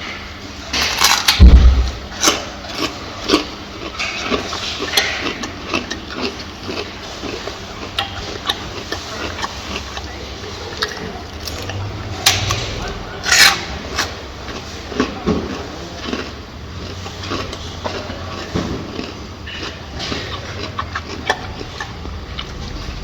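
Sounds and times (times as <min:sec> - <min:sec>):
gorilla chewing and crunching: 0:00.7 - 0:23.0
heavy low thump: 0:01.4 - 0:02.2.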